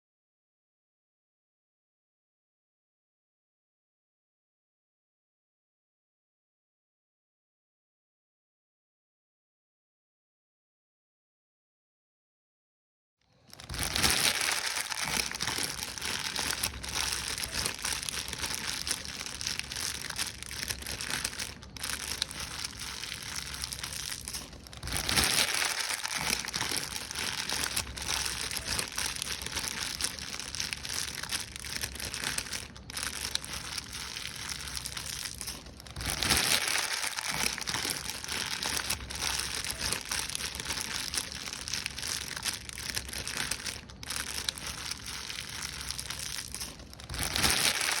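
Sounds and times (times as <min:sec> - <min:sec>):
paper crumpling: 0:13.4 - 0:48.0.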